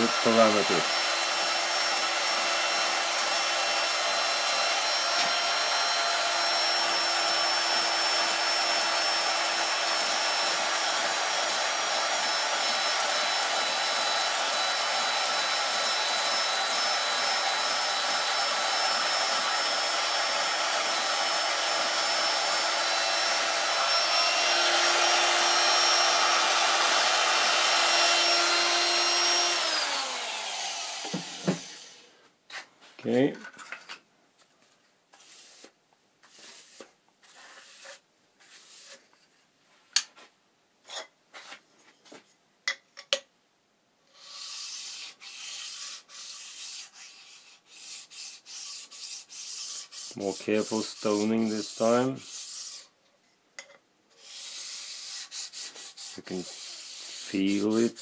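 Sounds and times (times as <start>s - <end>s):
electric motor humming: 0.0s - 32.1s.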